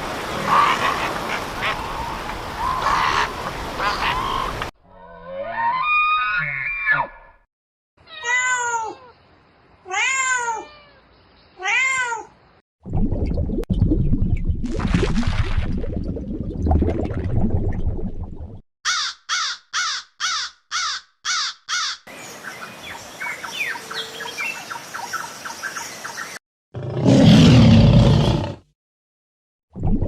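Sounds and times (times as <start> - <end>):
bird calling loudly: 0.5 - 4.7, 18.9 - 22.1.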